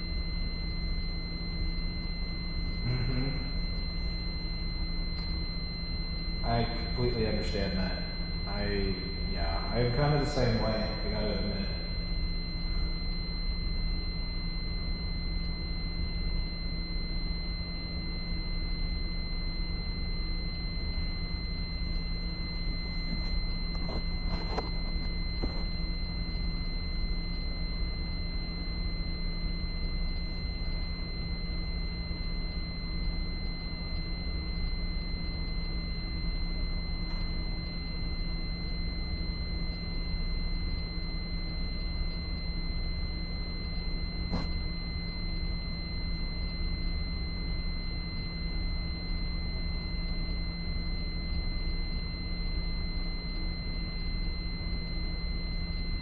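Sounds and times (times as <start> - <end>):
low electrical hum: 0.0 - 56.0
high-pitched trouble buzzer: 2.6 - 4.2, 6.4 - 13.0.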